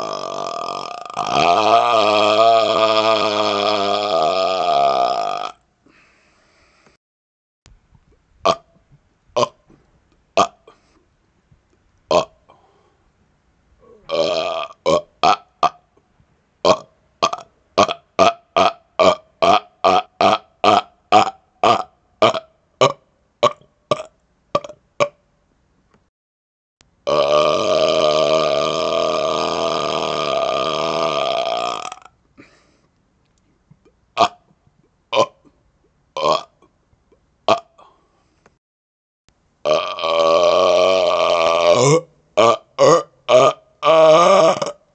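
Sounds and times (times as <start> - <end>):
man burping: 0.0 - 5.6, 9.4 - 9.6, 10.4 - 10.9, 12.1 - 12.6, 13.8 - 15.8, 16.6 - 25.2, 27.0 - 32.7, 34.2 - 34.5, 35.1 - 35.6, 36.2 - 36.7, 37.5 - 38.0, 39.7 - 44.9.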